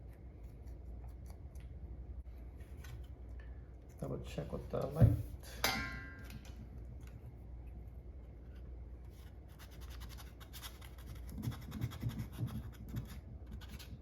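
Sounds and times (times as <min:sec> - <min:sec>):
sandpaper scratching plastic: 0:09.2 - 0:14.0.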